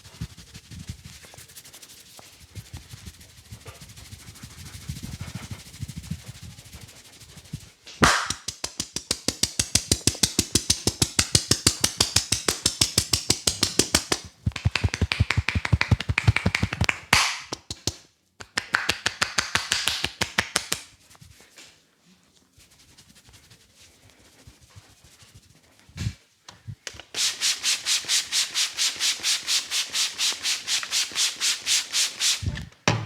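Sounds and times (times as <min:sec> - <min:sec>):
hands slapping and tapping on head: 0:08.0 - 0:21.0.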